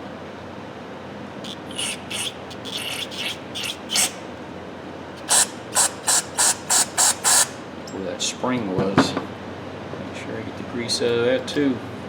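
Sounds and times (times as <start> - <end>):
rubbing strokes cleaning metal: 1.5 - 4.2, 5.2 - 7.6.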